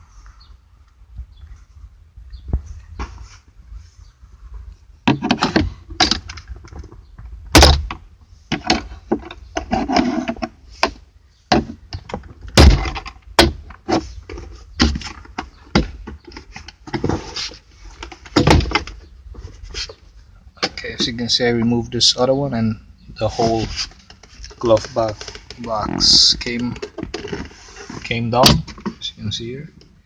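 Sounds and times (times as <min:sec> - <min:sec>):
heavy thunks: 0:05.0 - 0:17.5, 0:18.1 - 0:19.9, 0:23.1 - 0:29.0.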